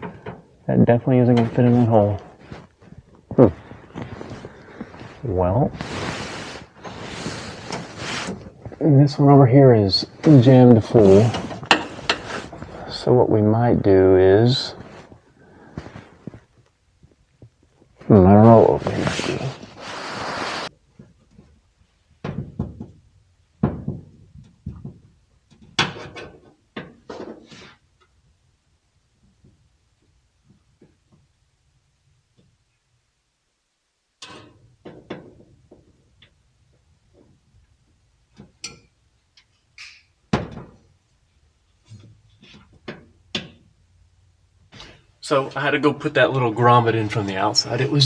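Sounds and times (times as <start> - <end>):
sharp knocks and thumps: 22.2 - 23.0, 23.6 - 27.5, 40.3 - 40.9.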